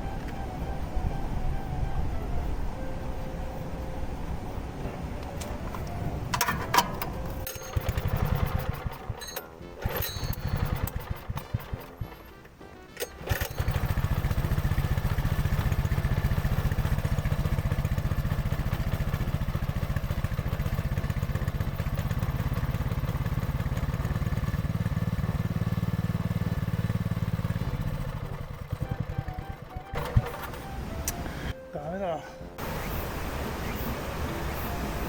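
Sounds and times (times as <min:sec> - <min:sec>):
small engine starting and running: 0:06.3 - 0:31.5.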